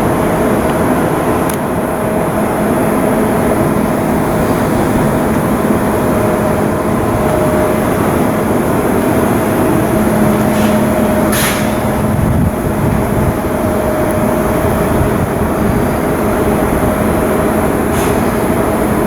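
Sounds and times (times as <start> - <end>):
machinery droning with hum: 0.0 - 19.0.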